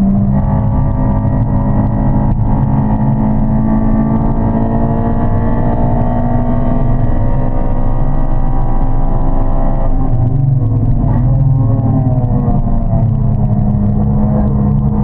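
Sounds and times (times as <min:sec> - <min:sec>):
car engine running hard: 0:00.0 - 0:15.0.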